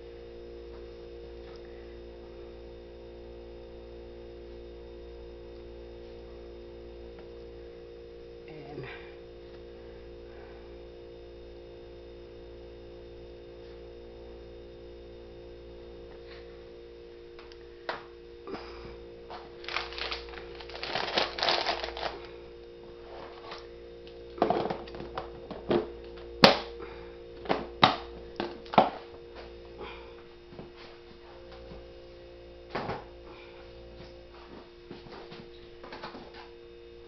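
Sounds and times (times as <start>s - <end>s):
steady low hum: 0.0s - 37.0s
plastic wrapping rustling: 19.5s - 22.3s.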